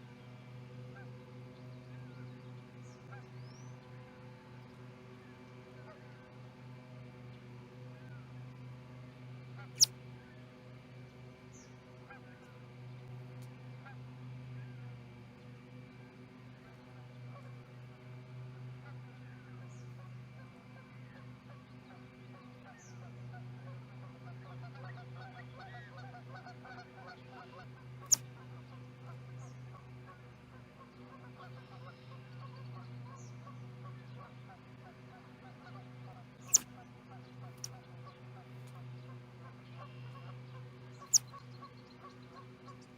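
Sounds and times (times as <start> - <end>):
low electrical hum: 0.0 - 42.9
birds chorus: 36.1 - 42.9
faint bird chirps: 36.4 - 36.7, 41.0 - 42.1.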